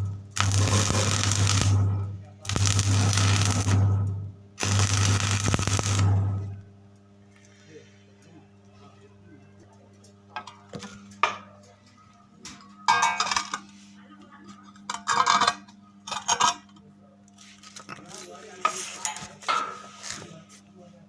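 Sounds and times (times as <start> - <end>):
crackling scraping metal work: 0.0 - 6.7, 14.7 - 20.7
welding transformer humming: 0.0 - 8.8.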